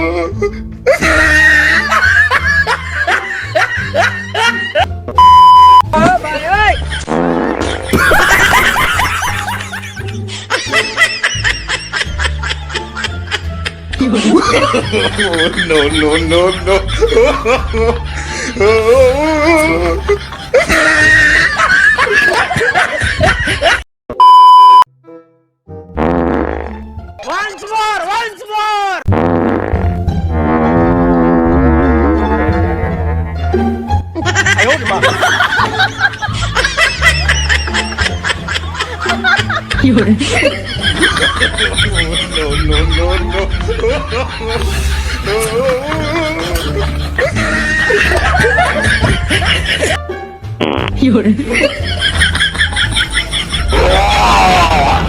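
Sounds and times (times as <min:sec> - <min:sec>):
young women laughing and shrieking: 0:00.9 - 0:04.5, 0:51.8 - 0:55.0
high-pitched laughs: 0:00.9 - 0:04.9, 0:18.6 - 0:23.8, 0:34.2 - 0:50.0
loud electronic beep: 0:05.2 - 0:05.9
loud steady censor beep: 0:05.2 - 0:05.9, 0:24.2 - 0:24.9.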